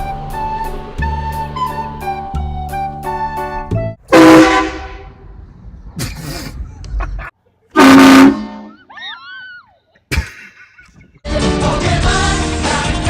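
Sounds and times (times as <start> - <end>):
train horn blasts: 4.1 - 5.2, 7.8 - 8.7.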